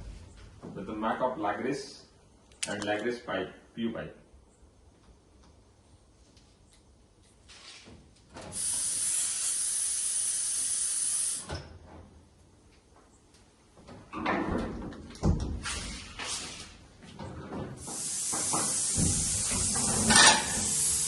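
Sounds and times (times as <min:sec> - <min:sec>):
air blow gun hissing: 0:08.5 - 0:11.5, 0:17.8 - 0:21.0.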